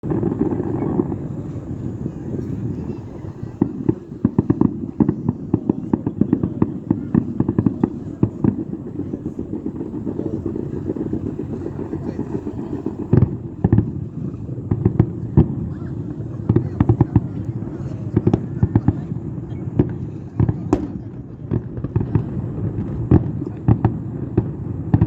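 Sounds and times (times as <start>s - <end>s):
fireworks booms: 0.0s - 25.0s
fireworks crackling pops: 0.0s - 25.0s.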